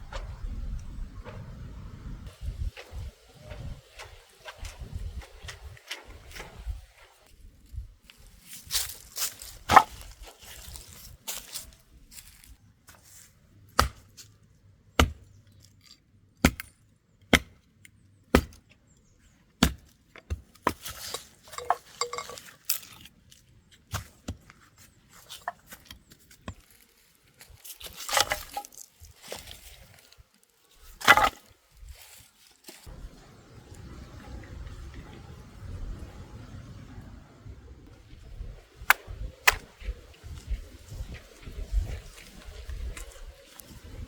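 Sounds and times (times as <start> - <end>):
handling and rustling: 2.3 - 13.3, 20.6 - 32.9.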